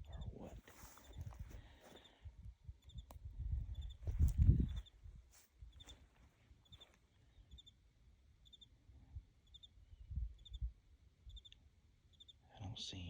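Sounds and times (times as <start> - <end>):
soft low thumps: 0.0 - 6.0
faint high chirp pulses: 0.0 - 13.0.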